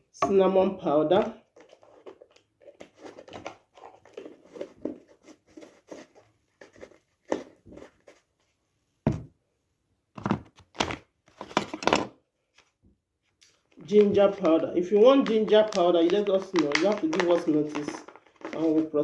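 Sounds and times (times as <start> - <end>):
plastic packaging crinkling: 13.9 - 19.0.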